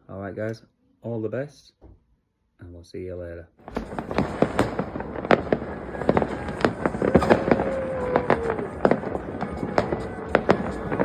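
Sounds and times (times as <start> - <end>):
fireworks bangs and crackles: 3.6 - 11.0.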